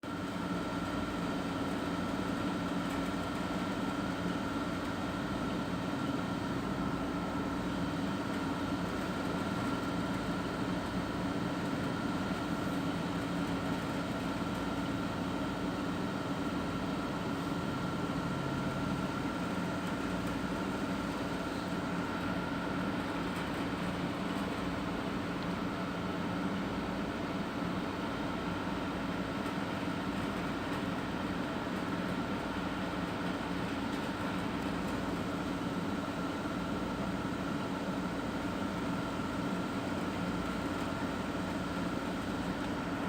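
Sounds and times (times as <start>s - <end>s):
mechanical hum: 0.0s - 43.0s.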